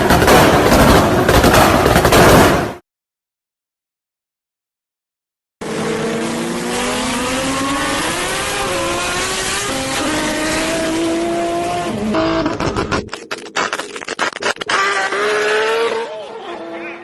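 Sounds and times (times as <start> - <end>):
car engine revving under load: 5.6 - 12.9
exhaust pops and crackles: 12.1 - 15.4.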